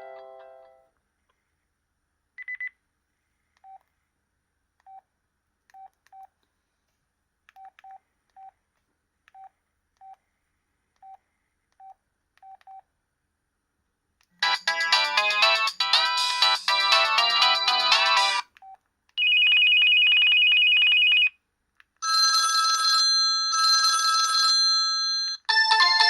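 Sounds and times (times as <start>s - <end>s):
ringtone melody: 14.4s - 18.4s, 25.5s - 26.0s.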